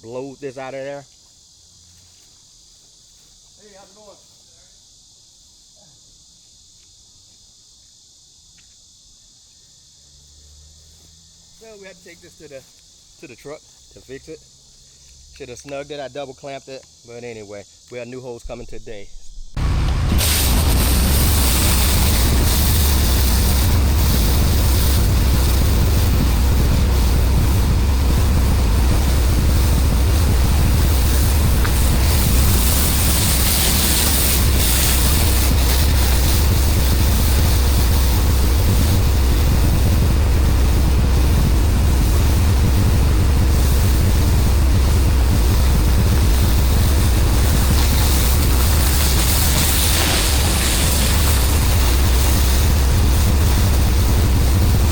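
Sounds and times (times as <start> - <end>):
engine drone: 18.5 - 54.9
high-pressure water spraying: 19.6 - 54.9.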